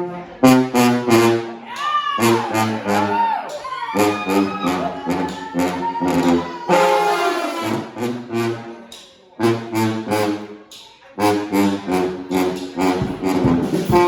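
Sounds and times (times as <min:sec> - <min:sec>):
brass band playing: 0:00.0 - 0:14.0.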